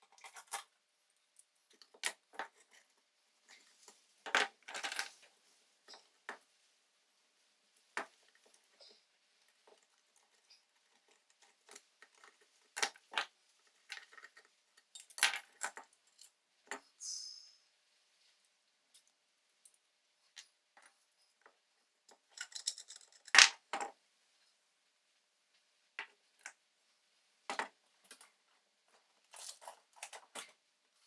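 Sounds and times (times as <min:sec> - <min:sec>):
metal parts clinking: 0:22.1 - 0:23.5.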